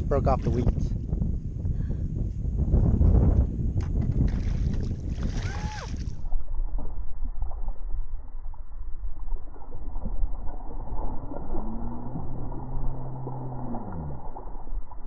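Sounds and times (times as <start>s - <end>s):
wind rumbling on microphone: 0.0s - 15.0s
microphone handling noise: 0.4s - 7.6s.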